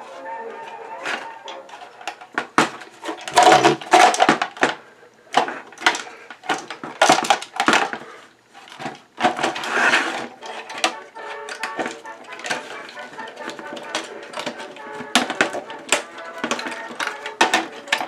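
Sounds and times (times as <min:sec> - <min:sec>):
plastic crunching and scraping: 0:00.0 - 0:18.0.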